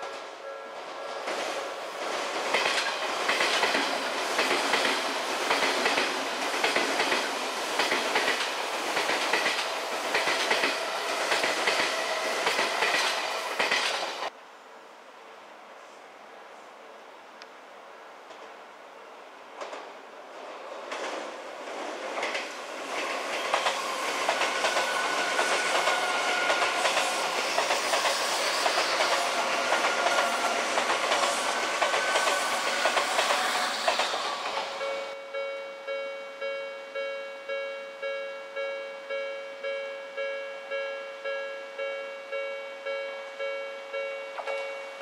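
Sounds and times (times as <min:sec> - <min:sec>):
train wheels rushing on rail: 0:00.0 - 0:14.3, 0:19.5 - 0:35.2
rail joints clicking: 0:01.2 - 0:14.3, 0:20.9 - 0:35.2
level crossing warning bell: 0:34.2 - 0:45.0.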